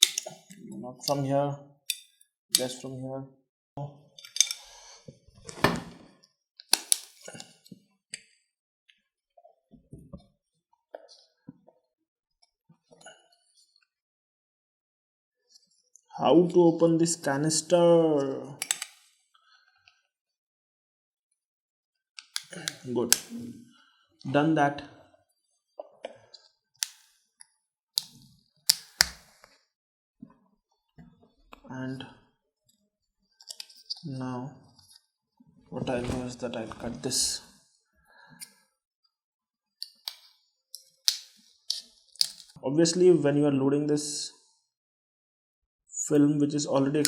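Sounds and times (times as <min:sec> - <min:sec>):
metal tool prying metal cap: 0:00.0 - 0:00.4, 0:04.2 - 0:04.6, 0:06.7 - 0:07.4, 0:18.6 - 0:19.0.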